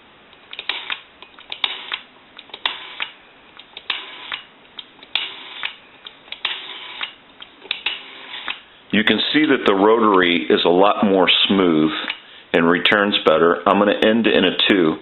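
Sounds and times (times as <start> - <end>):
rotary dial clicking and whirring: 0.3 - 8.6.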